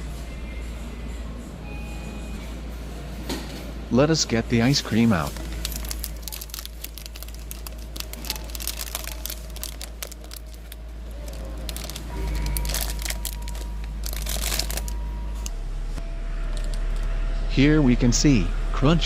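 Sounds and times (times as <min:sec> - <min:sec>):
steady low hum: 0:00.0 - 0:19.0
wrapper crinkling and rustling: 0:04.8 - 0:15.5.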